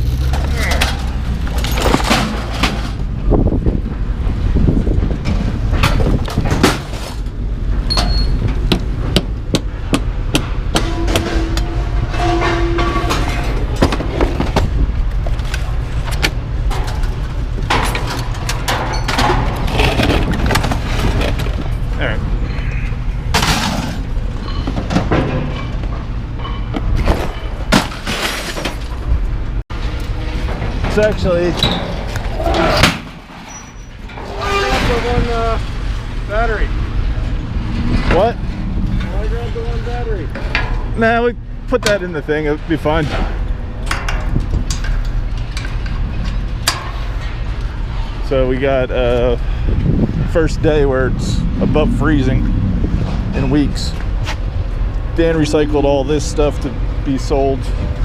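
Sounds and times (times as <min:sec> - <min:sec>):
scrap metal clanking: 0:00.0 - 0:03.1, 0:10.7 - 0:14.7, 0:23.3 - 0:29.0, 0:29.8 - 0:35.6
low rumble: 0:00.0 - 0:58.0.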